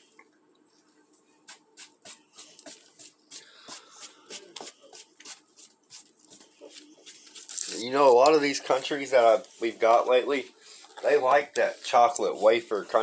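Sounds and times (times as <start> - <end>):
faint handling clicks and rustles: 6.2 - 13.0.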